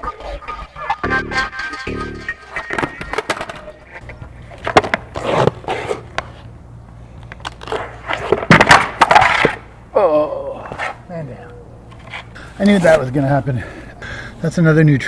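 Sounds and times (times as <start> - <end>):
skateboard deck clacking: 1.9 - 6.4, 7.4 - 9.7
skateboard wheels rolling on concrete: 2.8 - 9.8.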